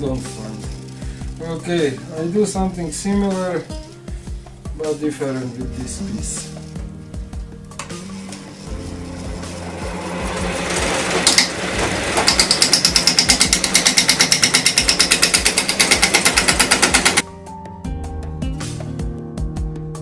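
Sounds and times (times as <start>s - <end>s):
background music: 0.0s - 20.0s
power tool cutting wood: 7.8s - 17.2s.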